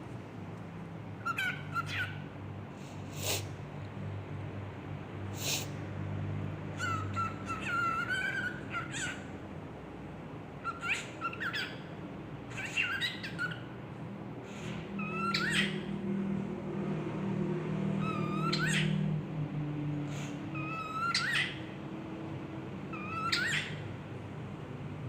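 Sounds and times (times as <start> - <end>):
cockatiel chirping: 1.2 - 2.2, 6.8 - 9.3, 10.6 - 11.9, 12.5 - 13.7, 15.0 - 15.8, 18.0 - 19.0, 20.6 - 21.6, 22.9 - 23.8.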